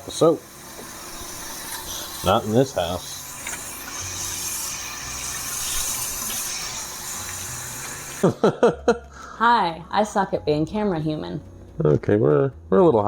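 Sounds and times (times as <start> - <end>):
tap water running: 0.0 - 8.3.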